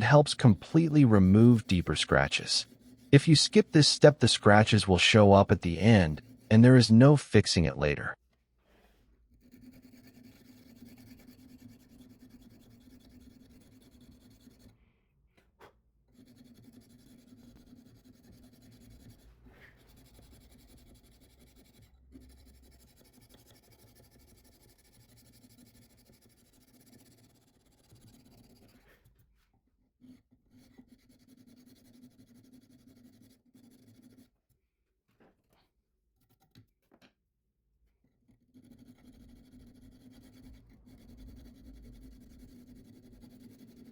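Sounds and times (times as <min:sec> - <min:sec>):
sandpaper scratching on steel blade: 0:00.4 - 0:05.2, 0:09.4 - 0:14.7.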